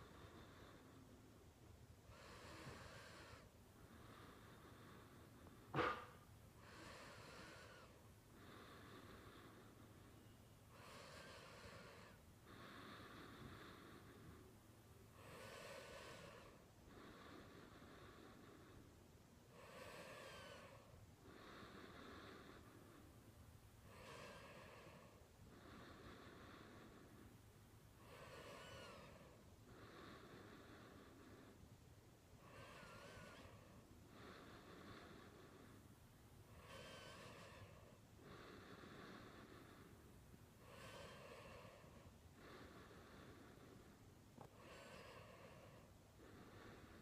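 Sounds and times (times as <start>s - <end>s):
faint snoring: 0.0s - 47.0s
person snoring with whistle: 28.0s - 29.4s, 32.4s - 33.7s.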